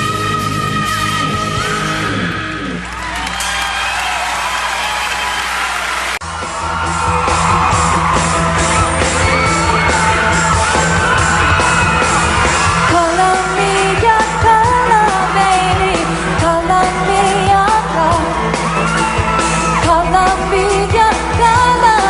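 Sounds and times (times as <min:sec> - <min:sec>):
band with steady beat: 0:06.2 - 0:22.0
female singer belting: 0:12.8 - 0:18.7, 0:19.7 - 0:22.0.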